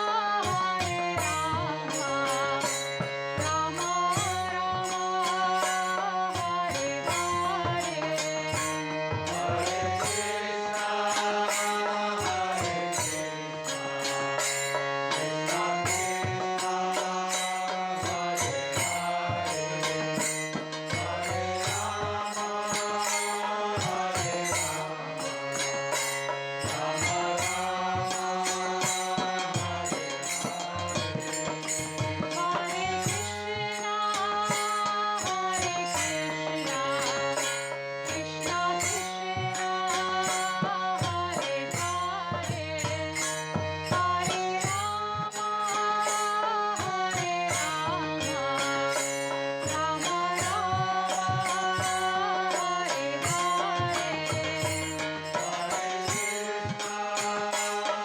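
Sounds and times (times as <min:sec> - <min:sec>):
light percussive beat: 0:00.0 - 0:58.0.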